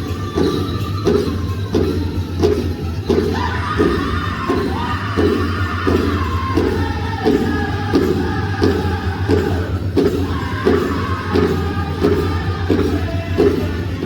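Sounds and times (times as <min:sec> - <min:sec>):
big drum beating: 0:00.0 - 0:14.0
men's voices singing together: 0:03.2 - 0:14.0.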